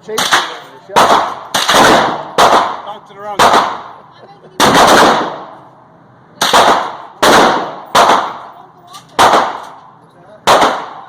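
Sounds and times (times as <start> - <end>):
gunshots with ringing tail: 0.1 - 4.0, 4.6 - 5.6, 6.4 - 8.5, 9.2 - 9.8, 10.4 - 11.0.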